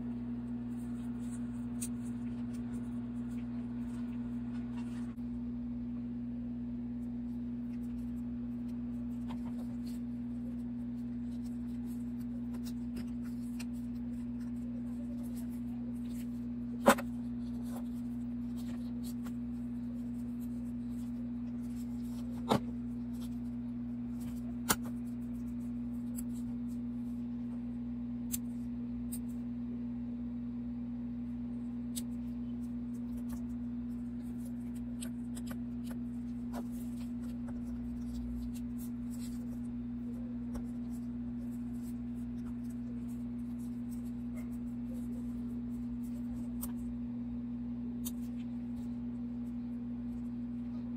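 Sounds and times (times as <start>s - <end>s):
steady low hum: 0.0s - 50.9s.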